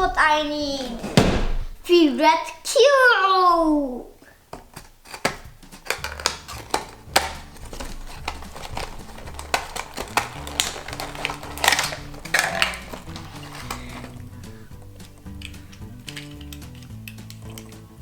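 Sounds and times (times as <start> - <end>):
fidget toy clicks and rattles: 5.2 - 17.9.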